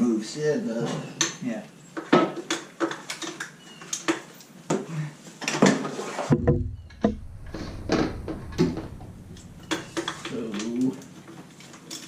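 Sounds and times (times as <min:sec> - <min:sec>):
steady low hum: 0:06.3 - 0:11.1.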